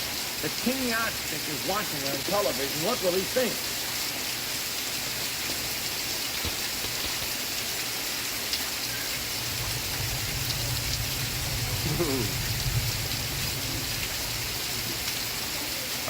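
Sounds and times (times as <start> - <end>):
steady rain falling: 0.0 - 16.0.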